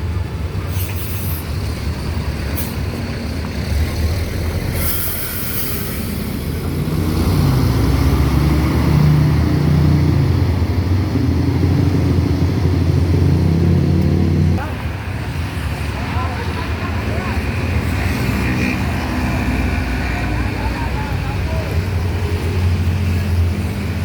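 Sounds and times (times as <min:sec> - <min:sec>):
heavy diesel engine running: 0:00.0 - 0:24.0
air brakes hissing: 0:00.6 - 0:01.6, 0:02.5 - 0:03.0, 0:04.6 - 0:06.6.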